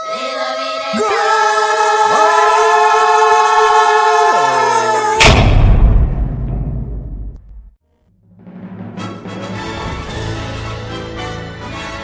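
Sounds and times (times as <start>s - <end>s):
voices singing held chord: 0.0s - 5.2s
loud drum hit ringing: 5.2s - 7.4s.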